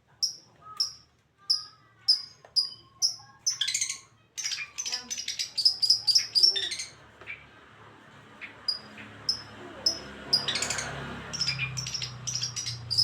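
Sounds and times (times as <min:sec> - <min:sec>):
songbird singing: 0:00.2 - 0:07.4, 0:08.4 - 0:13.0.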